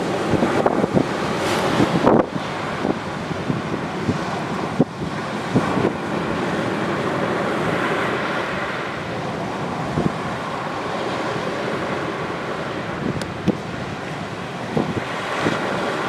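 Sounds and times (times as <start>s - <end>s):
surf washing onto beach: 0.0s - 16.0s
wind on microphone: 0.0s - 16.0s.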